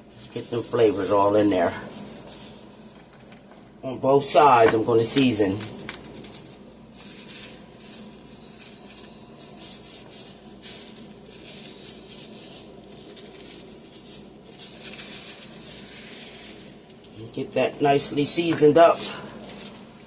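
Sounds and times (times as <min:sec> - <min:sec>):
seasoning shaker rattling: 0:05.0 - 0:17.2.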